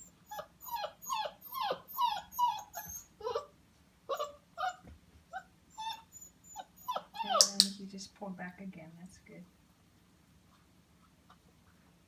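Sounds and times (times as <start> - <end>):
puppy whimpering: 0.0 - 3.5, 4.1 - 7.7.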